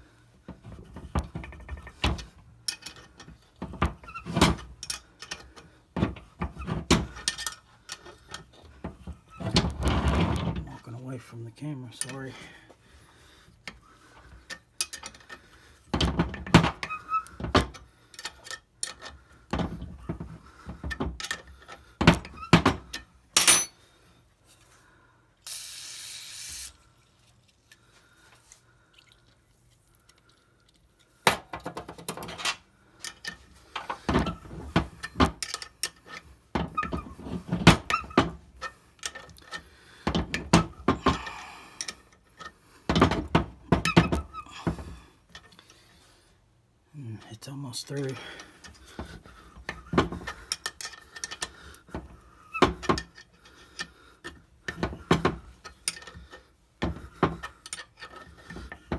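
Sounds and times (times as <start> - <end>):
short hiss: 25.4 - 26.8.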